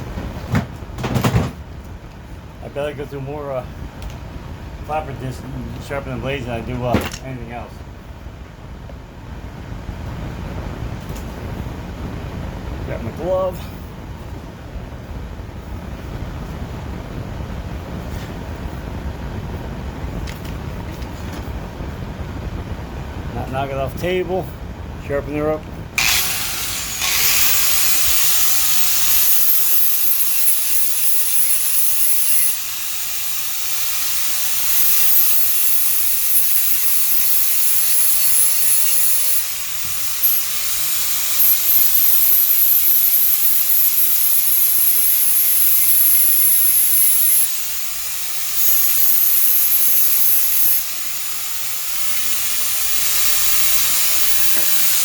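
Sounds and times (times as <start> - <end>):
angle grinder grinding steel: 26.0 - 55.0.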